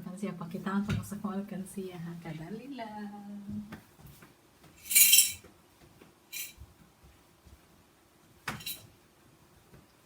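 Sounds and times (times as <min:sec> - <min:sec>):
coins clinking in piggy bank: 0:04.8 - 0:05.4, 0:06.4 - 0:06.6, 0:08.6 - 0:08.8.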